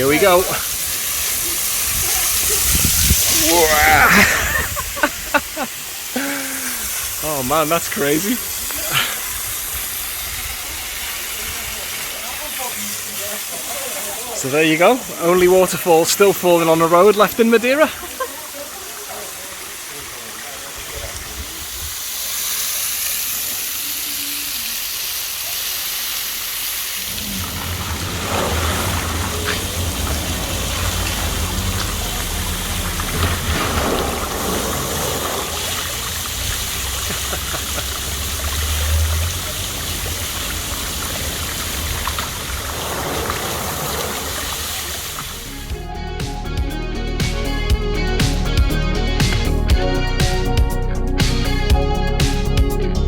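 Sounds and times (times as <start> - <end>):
water pouring hiss: 0.0 - 45.9
low rumble: 27.0 - 36.8.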